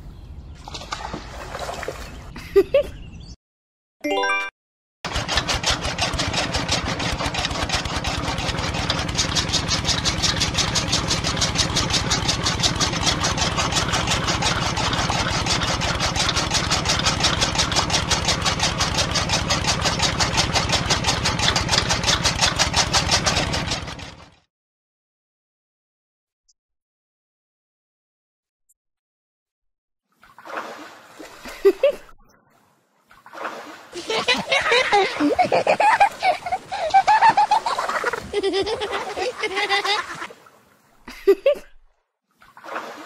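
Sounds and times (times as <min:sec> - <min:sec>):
small motor clattering: 0:05.1 - 0:24.4.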